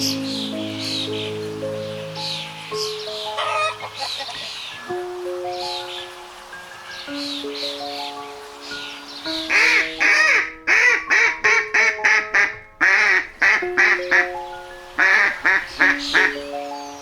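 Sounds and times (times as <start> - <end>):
soft background music: 0.0 - 17.0
duck quacking: 3.4 - 4.6, 9.5 - 14.4, 15.0 - 16.4.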